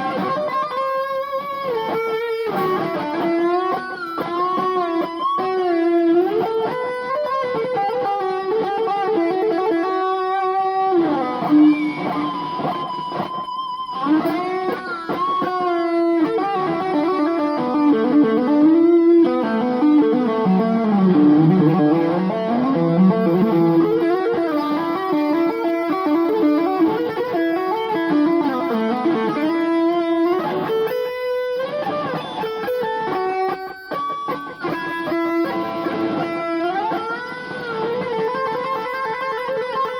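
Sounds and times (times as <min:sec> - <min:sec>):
electric guitar rock solo: 0:00.0 - 0:39.9.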